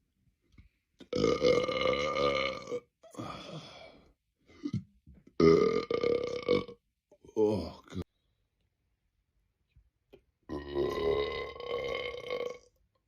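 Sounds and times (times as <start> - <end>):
man burping: 1.0 - 3.8, 5.4 - 8.0, 10.5 - 12.7.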